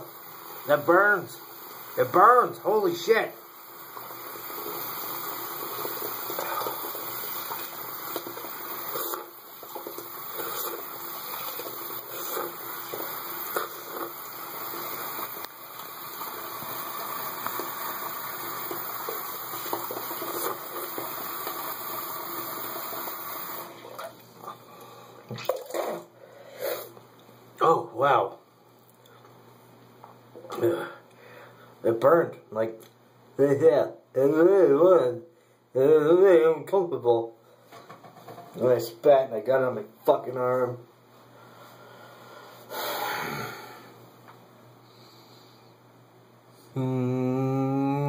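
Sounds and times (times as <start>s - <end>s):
tap water running into sink: 3.8s - 24.2s.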